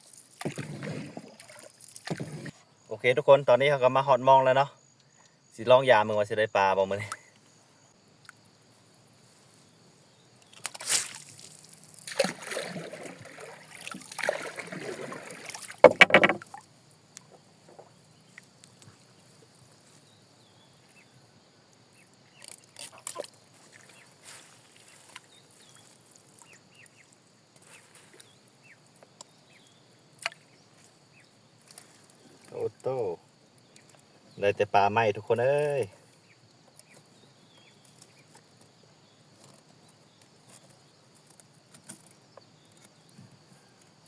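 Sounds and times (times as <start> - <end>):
water sloshing around a boat: 0.0 - 2.6, 10.1 - 20.9, 22.2 - 34.9
small knocks: 15.8 - 16.6.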